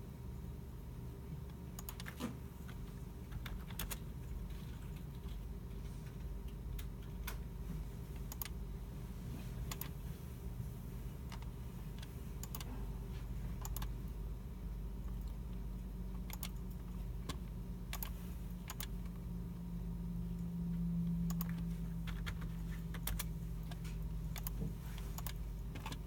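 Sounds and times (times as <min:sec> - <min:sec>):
steady low hum: 0:00.0 - 0:26.0
keyboard and mouse clicks: 0:01.5 - 0:07.5, 0:08.2 - 0:08.6, 0:09.6 - 0:10.0, 0:11.2 - 0:12.8, 0:13.6 - 0:14.0, 0:15.0 - 0:19.3, 0:21.2 - 0:26.0.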